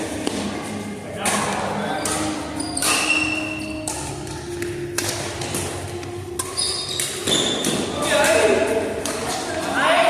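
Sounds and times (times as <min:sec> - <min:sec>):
racket hits ringing in a hall: 0:00.0 - 0:10.0.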